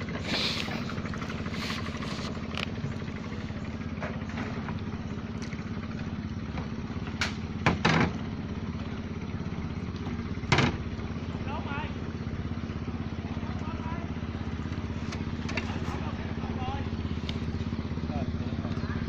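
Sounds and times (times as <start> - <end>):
small boat engine running: 0.0 - 19.0.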